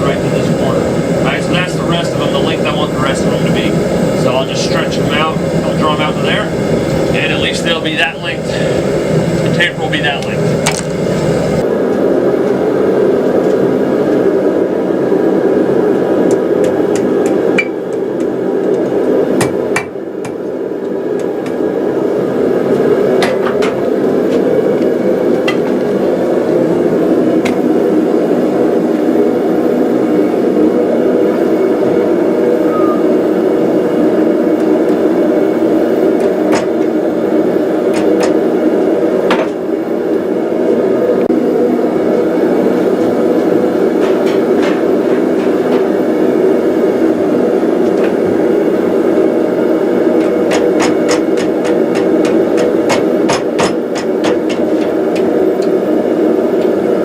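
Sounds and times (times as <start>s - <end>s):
hammer blows on hot steel: 0.0s - 11.6s
steady rushing noise: 0.0s - 11.7s.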